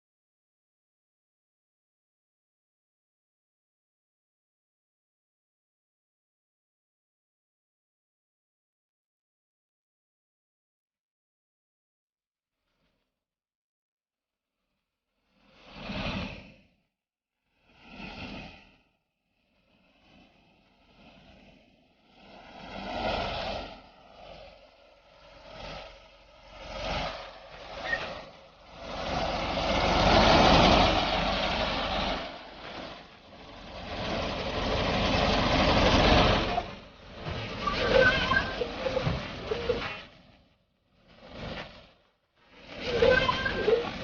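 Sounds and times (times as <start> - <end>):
whoosh of noise: 19.8 - 40.4, 41.0 - 44.0
tractor engine running: 27.3 - 39.8.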